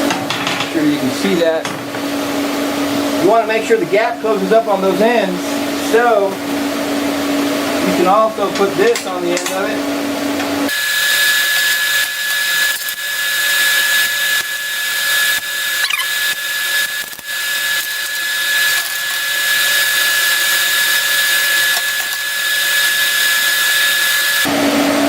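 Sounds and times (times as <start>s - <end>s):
welding arc hissing: 10.7s - 24.5s.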